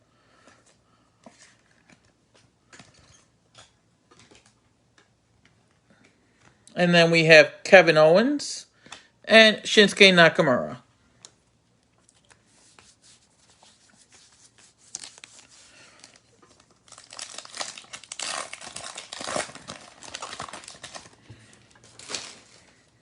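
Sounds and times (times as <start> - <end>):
foil wrapper tearing and crinkling: 14.8 - 21.2, 21.9 - 22.6.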